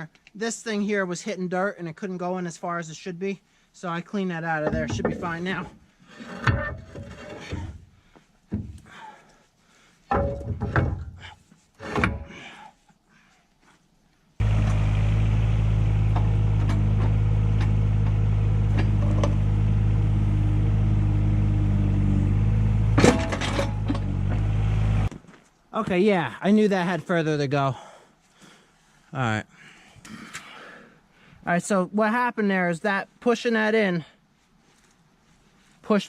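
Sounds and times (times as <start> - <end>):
short knocks and clatters: 10.1 - 11.2
diesel excavator engine running: 14.4 - 25.1.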